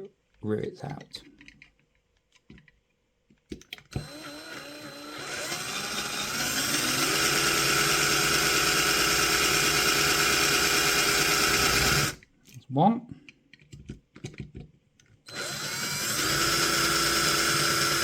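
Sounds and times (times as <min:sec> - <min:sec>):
drill clicks: 0:03.7 - 0:12.2, 0:15.3 - 0:18.0
electric drill motor spinning: 0:03.9 - 0:12.2, 0:15.3 - 0:18.0.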